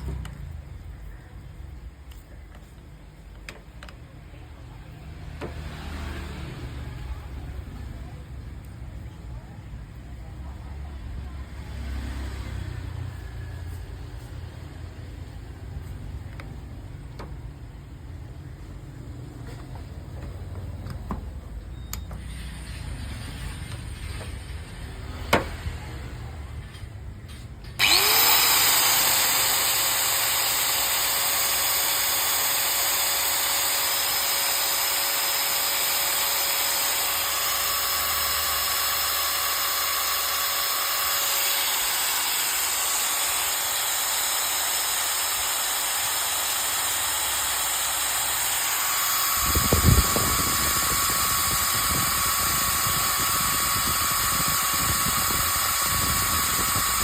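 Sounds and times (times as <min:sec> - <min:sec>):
angle grinder whining: 0:27.7 - 0:57.0.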